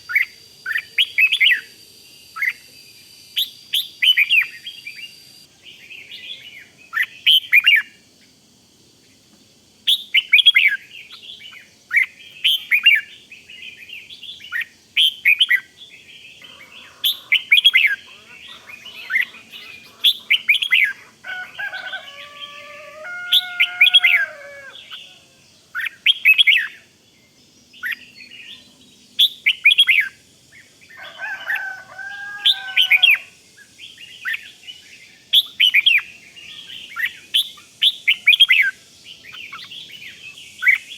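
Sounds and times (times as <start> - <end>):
bird chirping song: 0.0 - 8.4, 9.9 - 40.9
lower steady bird call: 0.0 - 40.9.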